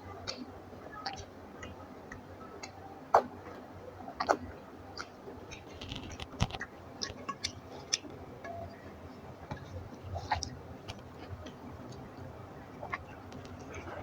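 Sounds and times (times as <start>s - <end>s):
person chewing food: 5.0s - 8.2s, 9.5s - 14.0s.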